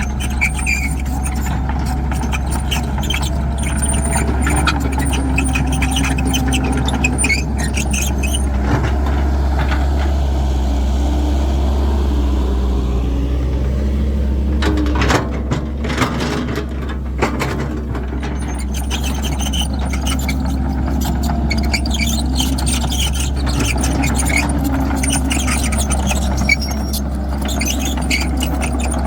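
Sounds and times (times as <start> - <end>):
metallic squealing and scraping: 0.0 - 9.0, 17.4 - 29.0
excavator diesel engine humming: 0.0 - 29.0.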